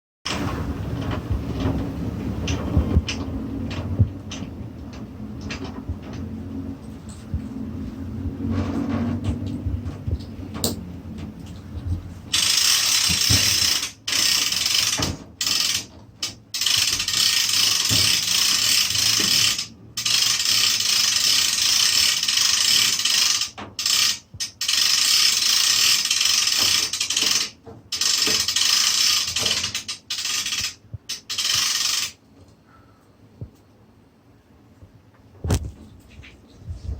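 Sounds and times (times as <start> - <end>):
crank winch ratchet clicking: 12.3 - 32.2.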